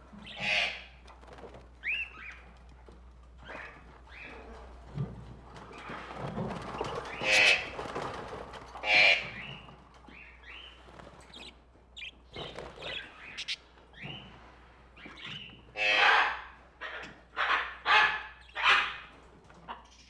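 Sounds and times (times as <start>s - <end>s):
birds squawking harshly: 0.2s - 1.0s, 6.6s - 8.2s, 8.8s - 10.7s, 11.3s - 14.3s, 15.0s - 19.1s
birds chirping: 1.8s - 4.8s, 5.6s - 19.2s.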